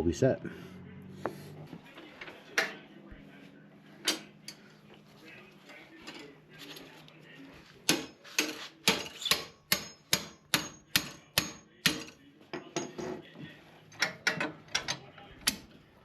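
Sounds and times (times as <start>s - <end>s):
hammer clanking on metal: 7.9s - 13.1s.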